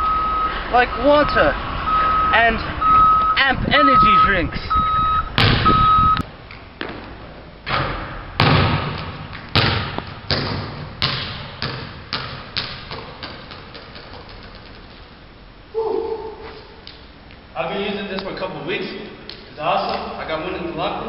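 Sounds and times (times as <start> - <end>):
echoing thuds: 5.4 - 5.8.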